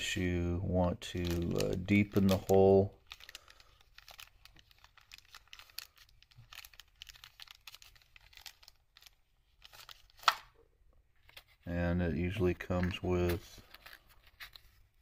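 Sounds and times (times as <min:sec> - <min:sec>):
faint rustling of parts: 0:01.0 - 0:15.0.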